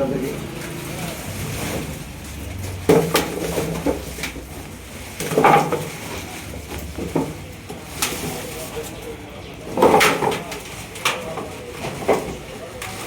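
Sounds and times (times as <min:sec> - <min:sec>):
cricket bats knocking and clattering: 0:02.6 - 0:08.6, 0:09.6 - 0:13.0.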